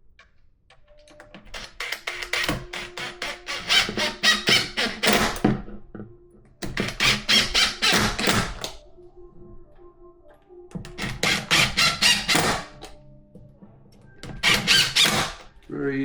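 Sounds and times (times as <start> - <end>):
screws driven into wood: 1.5 - 5.4, 6.6 - 8.7, 11.0 - 12.9, 14.4 - 15.5.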